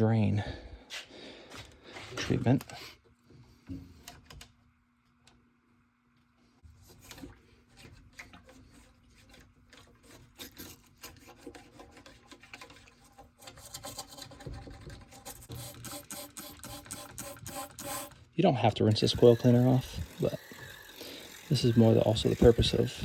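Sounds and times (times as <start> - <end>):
scraping and rubbing: 6.8 - 15.9.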